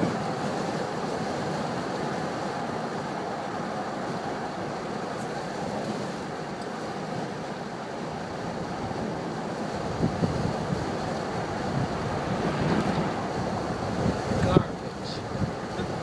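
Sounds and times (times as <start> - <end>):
strong wind buffeting microphone: 8.0 - 16.0.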